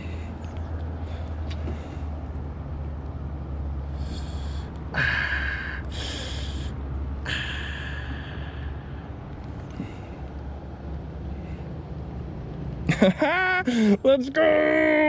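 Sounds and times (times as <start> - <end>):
man breathing hard: 0.0 - 2.6, 3.7 - 12.2, 13.7 - 14.0
low wind rumble on microphone: 8.2 - 12.8.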